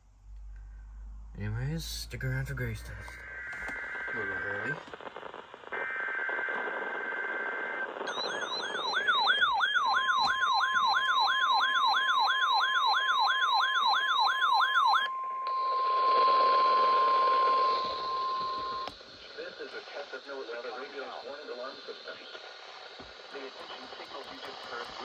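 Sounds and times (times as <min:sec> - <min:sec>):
high data tone with hiss: 0:01.8 - 0:09.6
warbling siren alarm: 0:07.0 - 0:18.9
steady warning alarm tone: 0:07.7 - 0:18.9.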